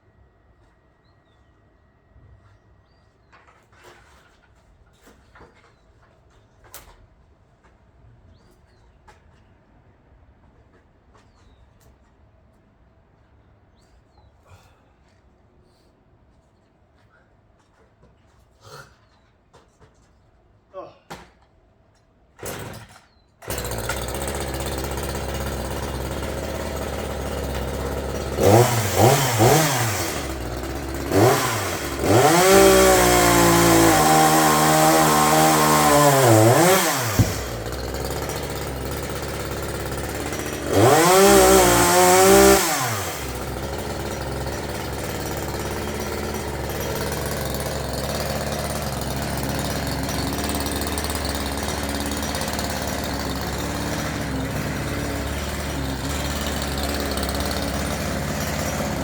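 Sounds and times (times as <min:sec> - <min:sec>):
chainsaw idling and revving: 0:22.4 - 0:59.0
chainsaw starting: 0:22.4 - 0:59.0.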